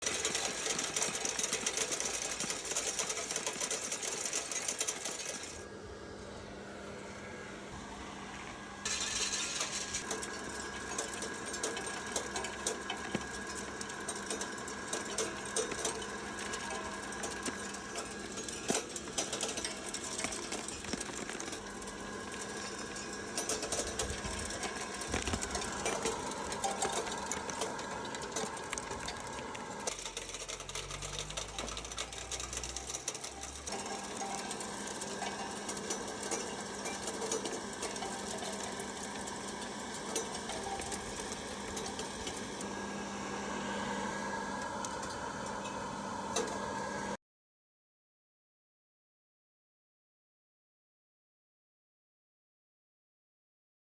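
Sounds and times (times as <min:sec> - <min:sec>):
motor hum: 0:00.0 - 0:47.2
clatter of nuts and shells: 0:08.9 - 0:42.6.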